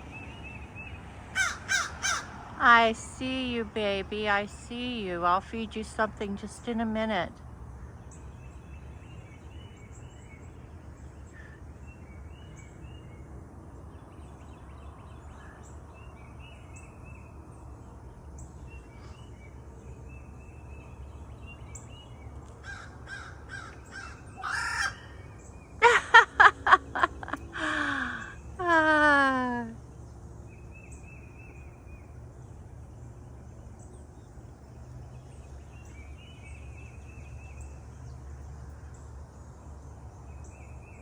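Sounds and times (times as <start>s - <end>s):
harsh bird calls: 1.4s - 3.0s, 22.6s - 28.6s
small birds chirping: 7.8s - 41.0s.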